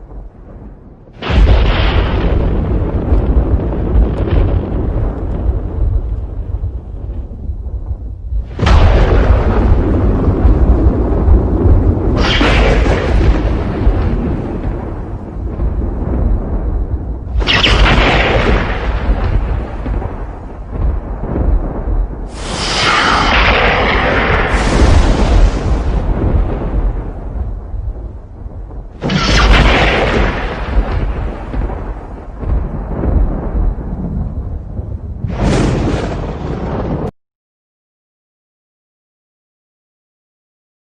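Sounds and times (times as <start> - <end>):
low thunder rumble: 0.0 - 37.1
thunderclap: 0.0 - 37.1.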